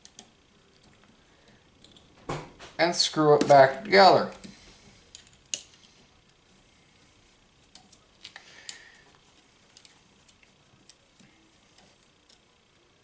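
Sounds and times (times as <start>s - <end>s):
small metal parts clicking: 1.8s - 2.1s, 4.3s - 6.0s.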